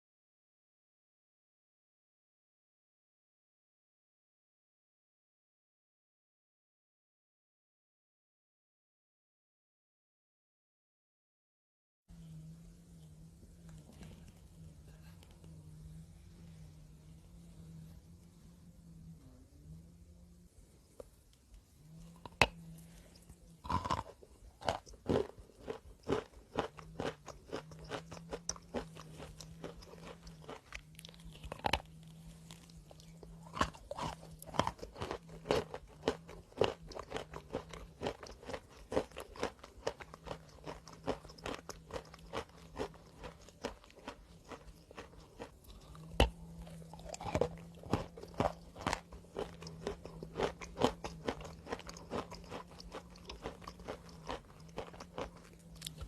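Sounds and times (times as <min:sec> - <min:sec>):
faint low hum: 0:12.1 - 0:56.0
person chewing crunchy chalk: 0:21.9 - 0:56.0.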